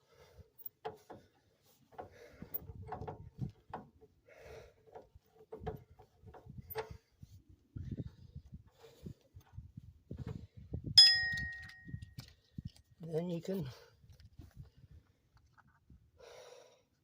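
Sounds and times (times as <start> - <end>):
hand tools knocking and clinking: 11.0 - 11.9.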